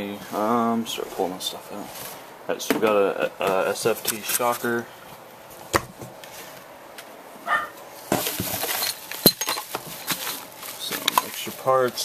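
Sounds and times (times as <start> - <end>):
plastic wrapping rustling: 7.9 - 12.0.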